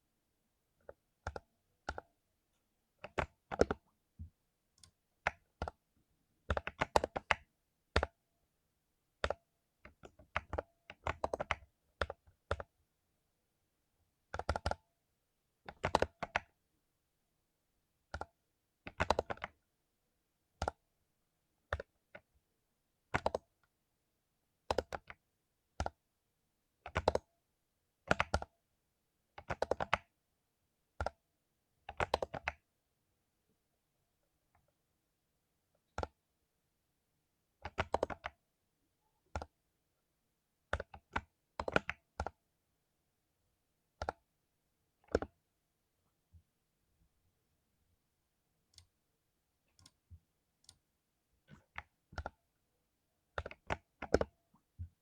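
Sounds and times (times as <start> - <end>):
mechanical keyboard typing: 3.0 - 3.8, 6.5 - 8.1, 9.2 - 12.7, 14.3 - 14.8, 15.6 - 16.5, 18.1 - 19.6, 23.1 - 23.5, 24.7 - 25.2, 25.8 - 26.0, 26.9 - 27.3, 28.0 - 28.5, 29.4 - 30.1, 31.9 - 32.6, 37.6 - 38.4, 40.7 - 42.4, 45.0 - 45.3, 51.5 - 52.4, 53.4 - 54.4.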